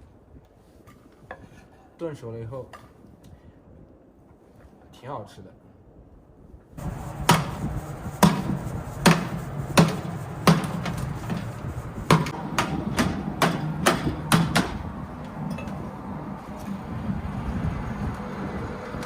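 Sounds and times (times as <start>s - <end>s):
knife chopping on cutting board: 7.3s - 7.5s, 12.1s - 12.7s.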